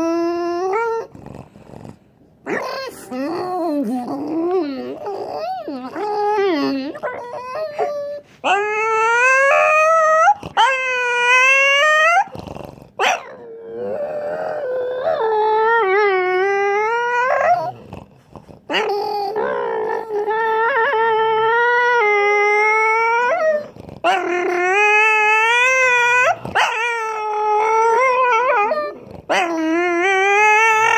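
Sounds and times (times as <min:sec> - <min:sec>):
dog howling: 0:02.5 - 0:12.4, 0:13.0 - 0:17.9, 0:18.7 - 0:30.9
dog yip: 0:13.0 - 0:13.4.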